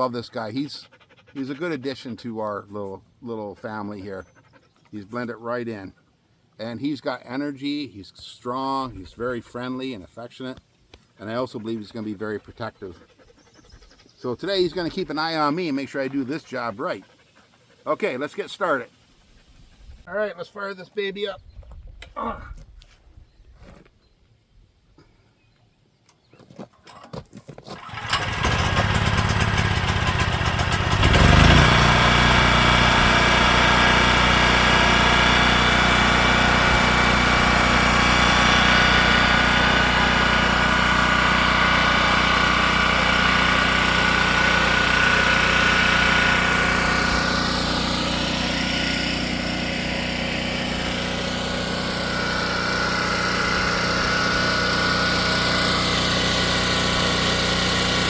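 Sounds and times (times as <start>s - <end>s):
generator engine running: 27.8s - 58.0s.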